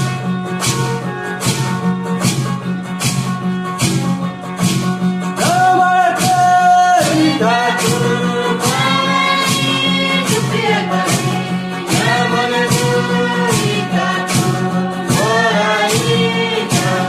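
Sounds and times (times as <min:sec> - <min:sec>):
steady percussion beat: 0:00.0 - 0:17.0
voices singing together: 0:05.4 - 0:17.0.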